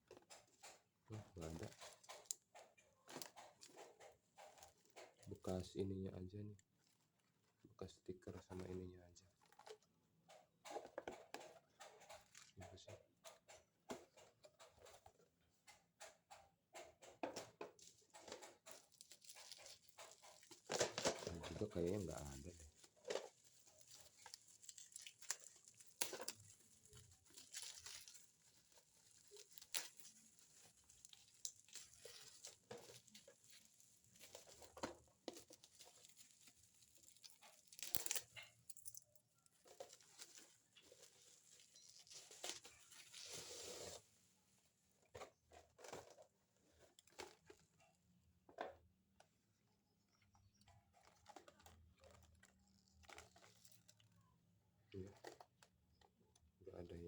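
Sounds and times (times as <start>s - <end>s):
cardboard box rustling: 39.6s - 44.2s.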